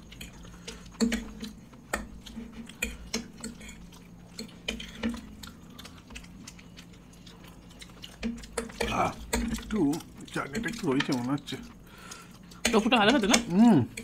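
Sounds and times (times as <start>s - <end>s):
chewing mouth noises: 0.0s - 14.0s.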